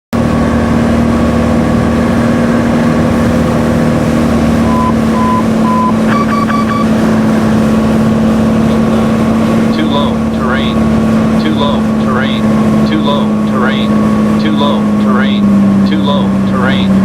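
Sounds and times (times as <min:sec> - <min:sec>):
piston aircraft engine drone: 0:00.2 - 0:17.0
short beeps: 0:04.6 - 0:07.0.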